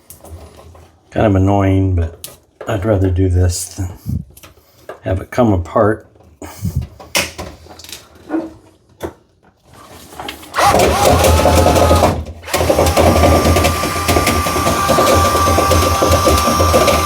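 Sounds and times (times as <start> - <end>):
power drill spinning vent brush: 9.8 - 17.0.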